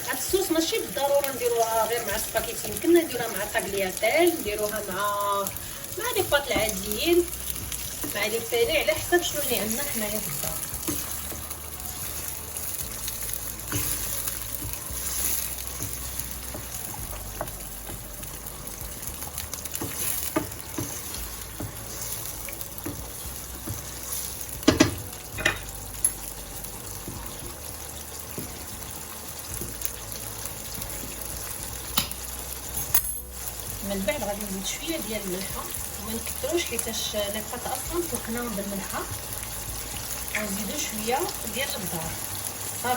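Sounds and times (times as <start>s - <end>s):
sauce sizzling in a frying pan: 0.0s - 42.9s
spoon knocking against pan: 15.8s - 18.1s, 24.6s - 25.7s.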